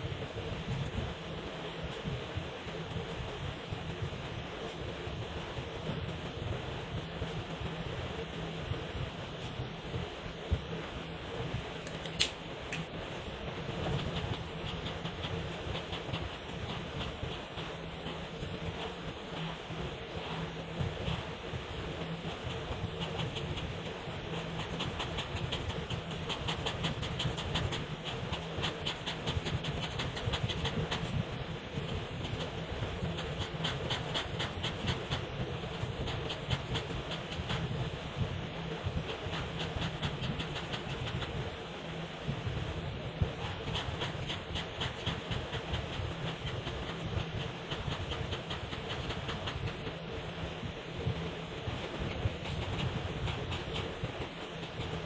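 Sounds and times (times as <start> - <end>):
low steady rumble: 0.0 - 55.0
steady low hum: 0.0 - 55.0
marker scratching on paper: 13.6 - 41.6, 42.3 - 50.4, 51.1 - 55.0.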